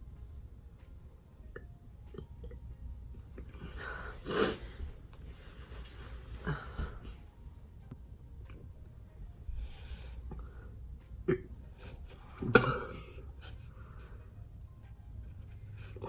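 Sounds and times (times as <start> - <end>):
person retching heaves: 4.0 - 4.8, 11.2 - 11.6, 12.4 - 13.3.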